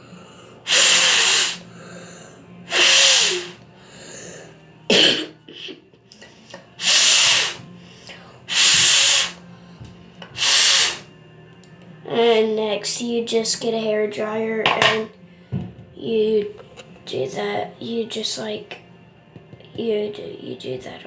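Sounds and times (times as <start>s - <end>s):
person blowing puffs of air: 0.0s - 2.0s, 2.7s - 4.2s, 6.8s - 7.7s, 8.5s - 9.5s, 10.4s - 11.1s.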